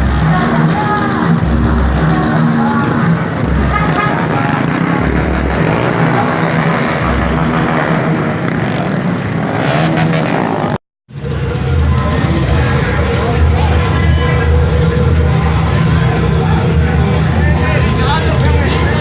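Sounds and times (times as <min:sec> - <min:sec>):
deep pulsing beat: 0:00.0 - 0:08.1
crowd noise: 0:00.0 - 0:19.0
motorcycle engines revving: 0:00.0 - 0:19.0.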